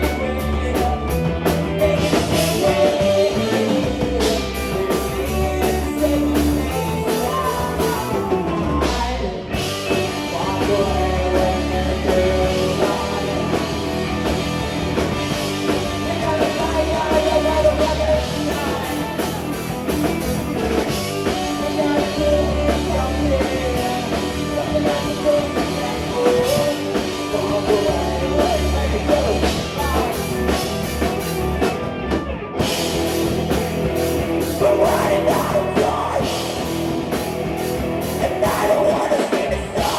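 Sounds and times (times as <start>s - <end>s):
person singing: 0.0s - 14.3s, 15.6s - 31.0s, 34.4s - 36.9s, 38.1s - 39.9s
bass guitar: 0.0s - 39.9s
drum kit: 0.0s - 39.9s
electric guitar: 0.0s - 39.9s.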